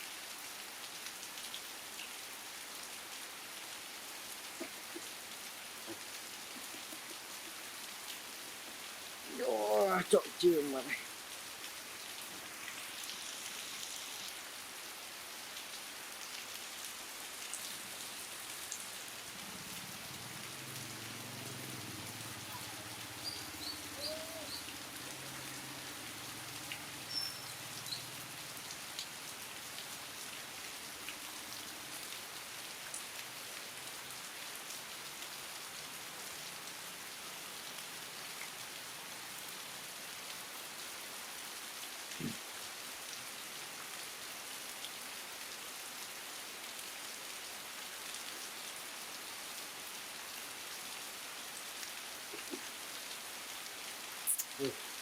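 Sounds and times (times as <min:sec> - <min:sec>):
rain hissing: 0:00.0 - 0:44.3, 0:47.6 - 0:55.0
faint high chirps: 0:23.2 - 0:24.7, 0:54.3 - 0:54.8.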